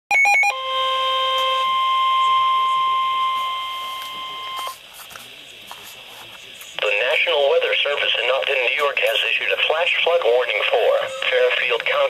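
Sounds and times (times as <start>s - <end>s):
alternating electronic beeps: 0.1s - 4.8s
steady alarm tone: 0.1s - 4.8s, 10.2s - 11.8s.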